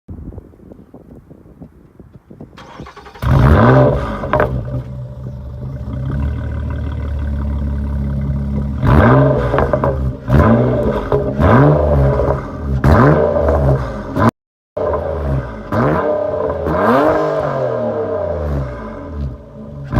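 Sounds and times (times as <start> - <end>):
engine revving: 2.6 - 19.9
car engine idling: 4.1 - 10.2.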